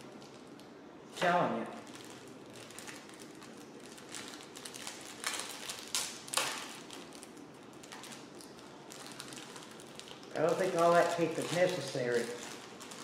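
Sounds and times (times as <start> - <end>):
packaging crinkling: 0.0 - 13.0
tape ripping: 2.7 - 13.0.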